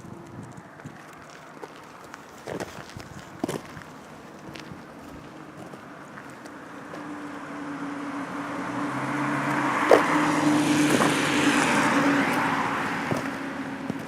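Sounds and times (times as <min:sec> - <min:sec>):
car passing by: 0:06.6 - 0:14.0.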